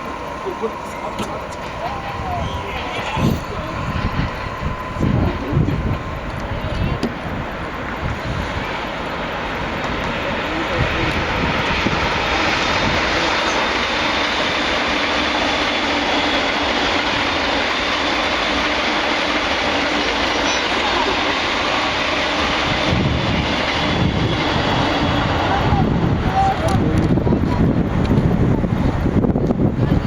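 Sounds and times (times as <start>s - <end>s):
freight train wheels rumbling: 0.0s - 30.0s.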